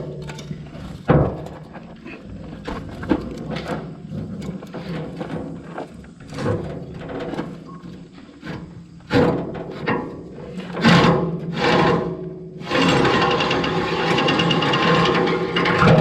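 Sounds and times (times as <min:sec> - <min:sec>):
metal tools clanking and scraping: 0:00.0 - 0:08.1, 0:12.7 - 0:16.0.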